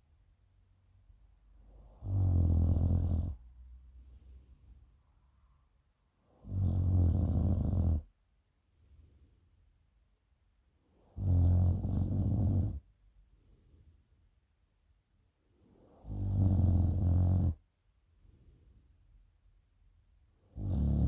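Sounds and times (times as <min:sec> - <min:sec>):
person snoring: 0:01.9 - 0:03.4, 0:06.4 - 0:08.1, 0:11.2 - 0:12.8, 0:16.0 - 0:17.6, 0:20.6 - 0:21.0
faint breaths: 0:03.0 - 0:06.4, 0:08.6 - 0:10.0, 0:12.6 - 0:14.6, 0:18.0 - 0:19.4.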